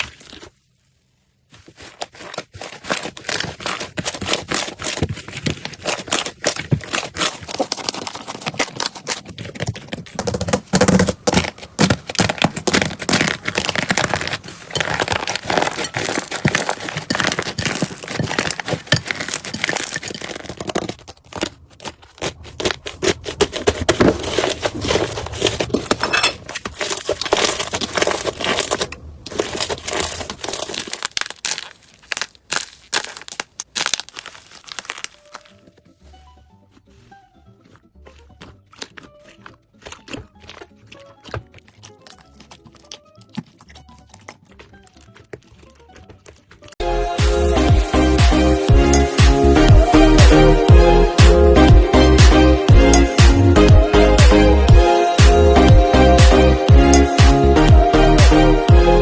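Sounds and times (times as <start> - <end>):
slime squeezed by hand: 26.8 - 36.2.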